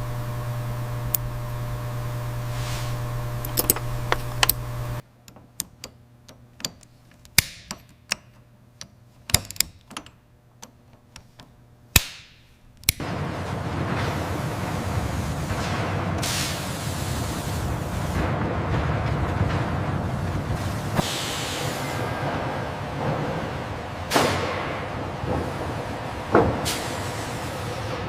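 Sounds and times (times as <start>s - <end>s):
loud noisy hum: 0.0s - 5.0s, 12.8s - 28.0s
low mechanical hum: 0.0s - 28.0s
sharp clicks and knocks: 3.4s - 13.1s.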